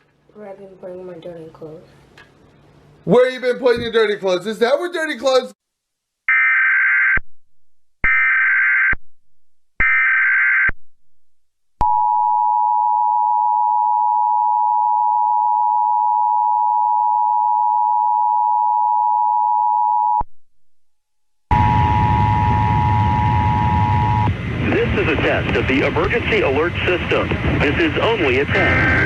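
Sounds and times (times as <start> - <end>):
two-tone attention signal: 21.5 - 24.3.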